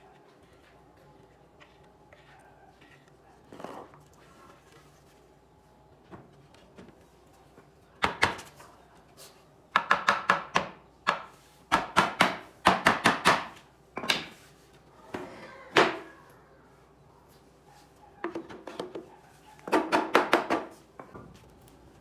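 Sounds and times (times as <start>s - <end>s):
hammer striking wood: 9.7s - 14.4s.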